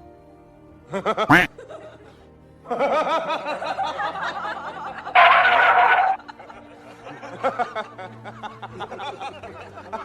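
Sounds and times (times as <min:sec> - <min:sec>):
music: 0:00.0 - 0:10.0
loud rising cry: 0:05.2 - 0:06.2
rapid wavering pitched calls: 0:05.2 - 0:06.2.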